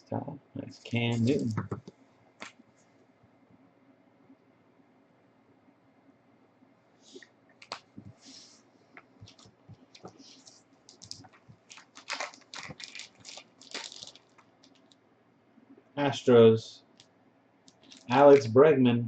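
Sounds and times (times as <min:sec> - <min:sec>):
trading cards handled in plastic holders: 0:09.2 - 0:15.0, 0:17.7 - 0:18.4.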